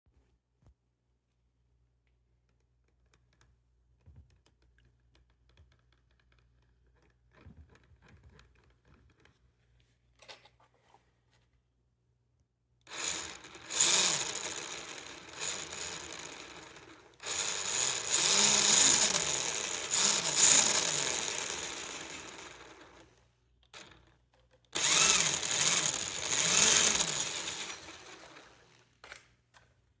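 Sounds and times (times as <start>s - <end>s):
electric motor whirring: 12.9s - 23.0s, 24.8s - 28.7s
gears whirring and grinding: 12.9s - 23.0s, 24.8s - 28.8s.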